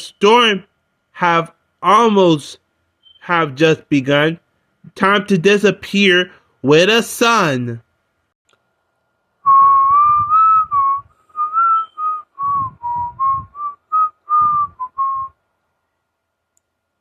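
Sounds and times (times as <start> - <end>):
person whistling a tune: 9.5 - 15.4.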